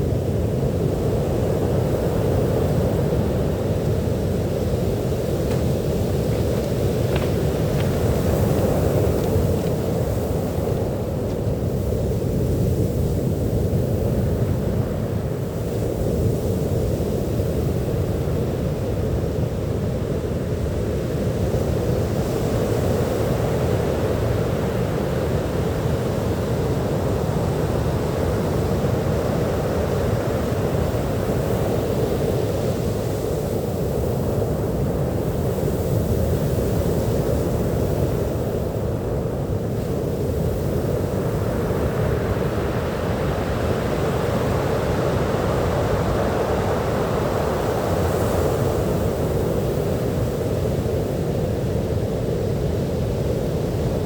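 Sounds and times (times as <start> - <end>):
sea surf washing on beach: 0.0 - 54.0.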